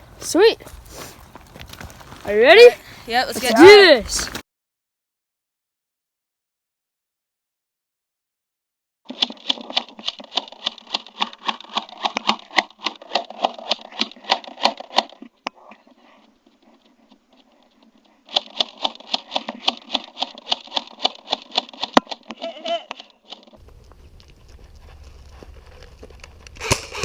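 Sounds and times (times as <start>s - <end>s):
running footsteps on gravel: 0.0s - 4.4s, 23.6s - 27.0s.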